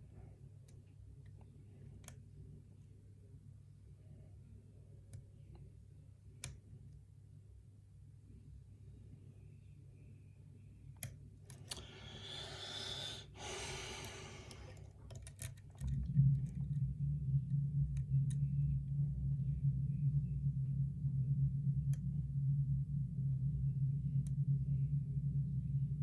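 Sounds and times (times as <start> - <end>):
steady low hum: 0.0 - 26.0
lock pick clicks: 11.0 - 16.0
long breath out: 11.7 - 14.9.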